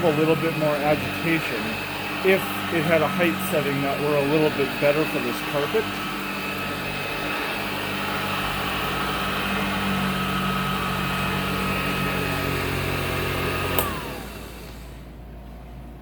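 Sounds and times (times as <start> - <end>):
vacuum cleaner motor whining: 0.0 - 16.0
vacuum switch click: 13.7 - 14.1.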